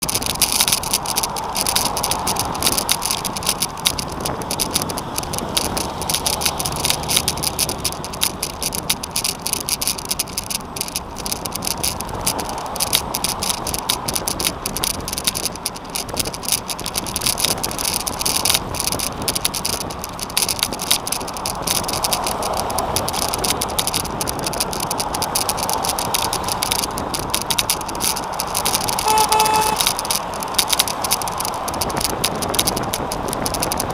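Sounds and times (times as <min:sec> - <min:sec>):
tyre noise: 0:00.0 - 0:33.9
vehicle shell rattling and clicking: 0:00.0 - 0:33.9
horn toot: 0:29.0 - 0:29.9.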